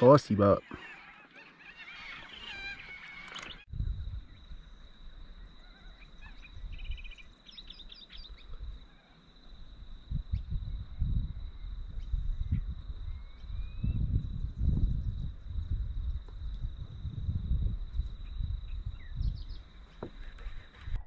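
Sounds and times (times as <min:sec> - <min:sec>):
birds chirping: 0:00.0 - 0:09.6, 0:18.0 - 0:21.0
low thumps on microphone: 0:13.9 - 0:21.0.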